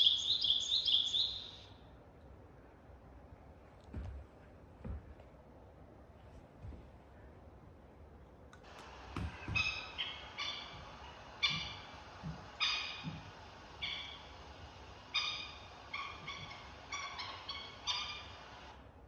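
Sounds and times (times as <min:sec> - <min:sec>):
bird harsh calls: 0:00.0 - 0:01.8, 0:08.8 - 0:18.8.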